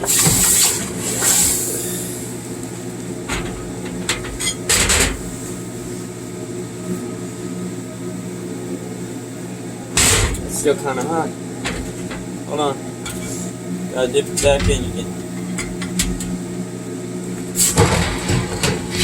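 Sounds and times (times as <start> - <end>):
welding machine electrical hum: 0.0 - 19.0
metal knocks and scrapes: 17.6 - 19.0.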